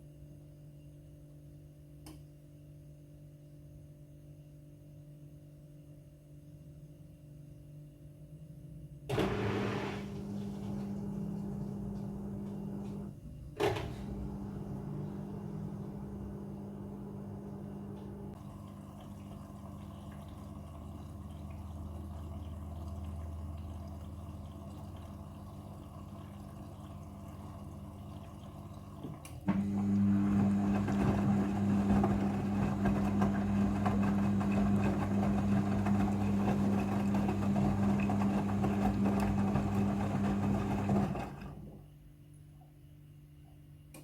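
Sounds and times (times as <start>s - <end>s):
washing machine hum: 8.4s - 44.0s.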